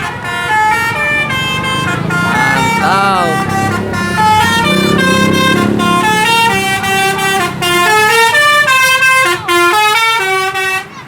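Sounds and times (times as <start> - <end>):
multi-tone musical bus horn: 0.0 - 11.0
low engine rumble: 0.1 - 8.9.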